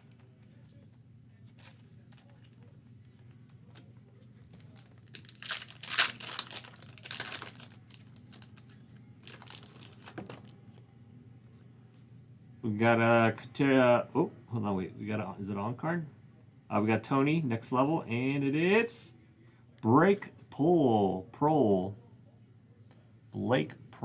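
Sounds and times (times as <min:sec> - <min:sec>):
foil wrapper tearing and crinkling: 0:04.6 - 0:10.4.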